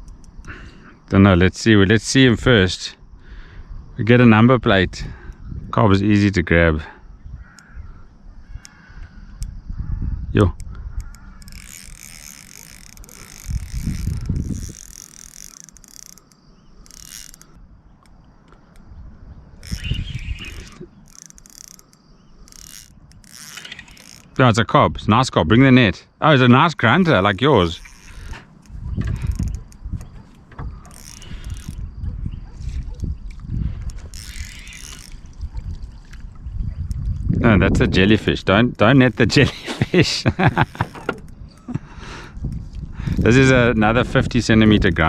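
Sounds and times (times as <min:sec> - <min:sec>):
fishing reel ticking: 0:07.4 - 0:07.8, 0:08.5 - 0:09.6, 0:10.5 - 0:18.9, 0:19.5 - 0:24.4, 0:26.7 - 0:32.0, 0:32.8 - 0:37.3, 0:37.9 - 0:45.0.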